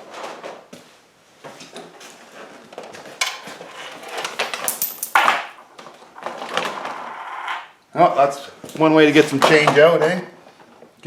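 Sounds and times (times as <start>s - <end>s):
coins clinking: 4.0s - 5.5s.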